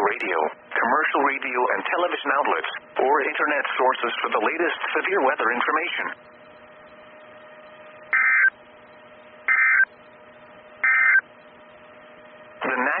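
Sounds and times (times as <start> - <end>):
faint steady hum: 0.0 - 13.0
digital data tone bursts: 8.1 - 8.5, 9.5 - 9.9, 10.8 - 11.2.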